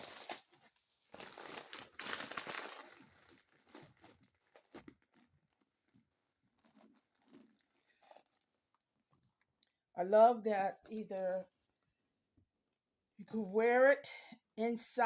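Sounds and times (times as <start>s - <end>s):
packaging crinkling and rustling: 0.0s - 8.8s.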